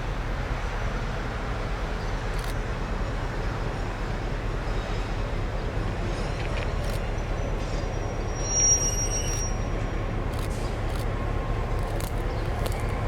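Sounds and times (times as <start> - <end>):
freight train wheels rumbling on rails: 0.0 - 13.0
high wheel squeal: 7.1 - 10.1.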